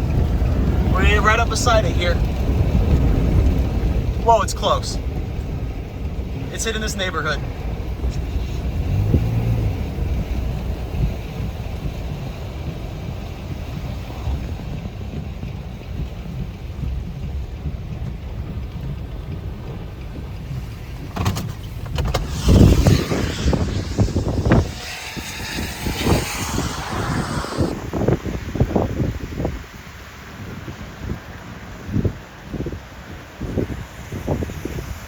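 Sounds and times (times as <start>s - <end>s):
rain: 0.0s - 4.4s, 7.4s - 22.0s, 24.6s - 28.1s
vehicle driving rumble: 0.0s - 31.6s
wind gusts buffeting microphone: 0.0s - 35.0s.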